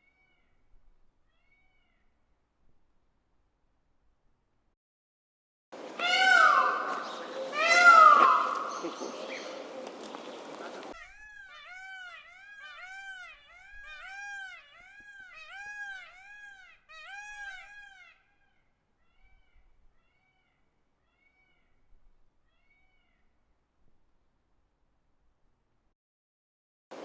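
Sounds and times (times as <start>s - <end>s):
peacock calling: 5.8s - 18.2s.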